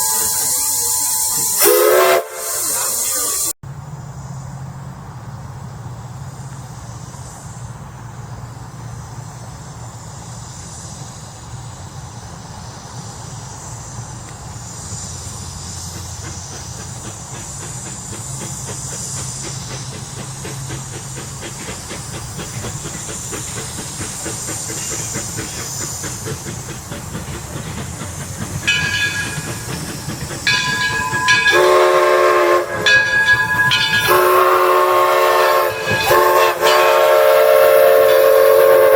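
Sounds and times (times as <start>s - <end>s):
steam whistle blowing: 0.0s - 3.5s, 28.6s - 38.9s
steam locomotive running: 0.0s - 38.9s.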